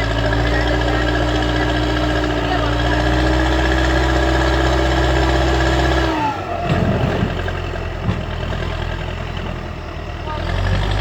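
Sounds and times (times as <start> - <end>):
heavy diesel engine running: 0.0 - 11.0
low knocks: 6.6 - 8.7.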